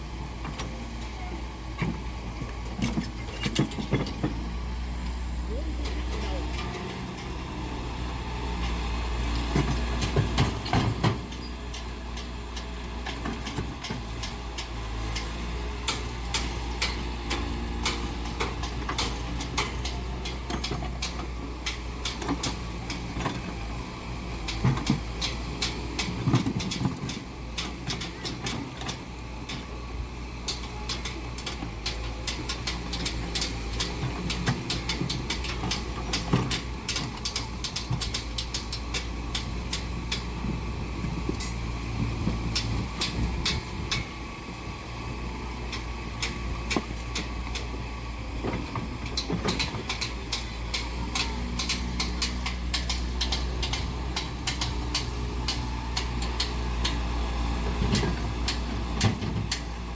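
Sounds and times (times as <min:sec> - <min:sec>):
diesel engine running: 0:00.0 - 0:59.9
metallic clicks and clanks: 0:30.5 - 0:40.2, 0:49.0 - 0:57.0.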